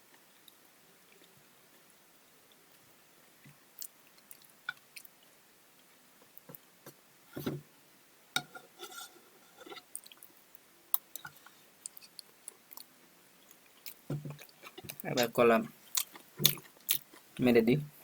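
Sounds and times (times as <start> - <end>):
person chewing and eating: 3.8 - 5.3, 9.8 - 17.4.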